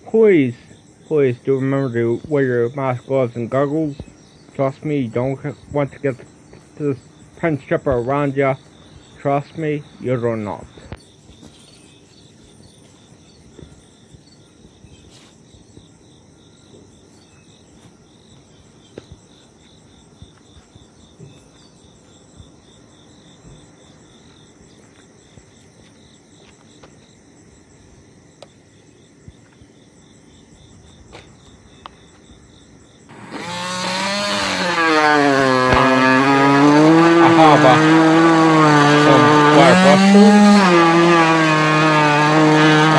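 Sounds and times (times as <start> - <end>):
crickets chirping: 0.0 - 42.9
loud motor: 33.1 - 42.9.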